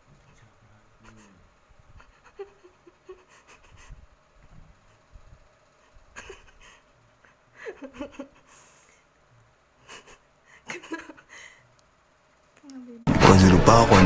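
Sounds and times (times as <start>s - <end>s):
faint breathing: 8.4s - 11.8s.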